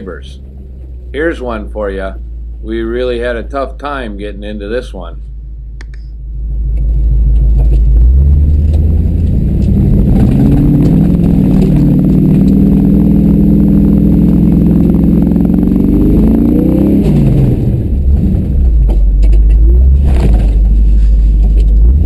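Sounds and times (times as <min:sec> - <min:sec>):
truck engine working hard: 0:06.5 - 0:22.0.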